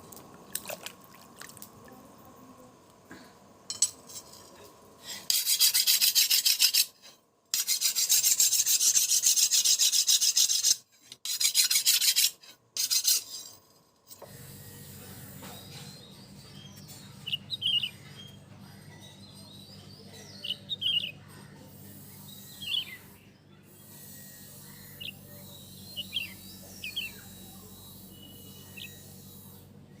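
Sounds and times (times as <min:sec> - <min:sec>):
steady low hum: 0:00.0 - 0:05.6, 0:13.4 - 0:30.0
small birds chirping: 0:14.8 - 0:29.7.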